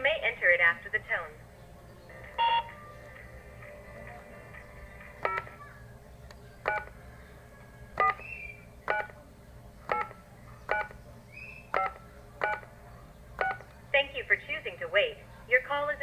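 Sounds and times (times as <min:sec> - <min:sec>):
telephone keypad tones: 0:02.4 - 0:02.7, 0:05.2 - 0:05.5, 0:06.6 - 0:06.9, 0:08.0 - 0:08.2, 0:08.9 - 0:09.2, 0:09.9 - 0:11.0, 0:11.7 - 0:12.7, 0:13.4 - 0:13.7.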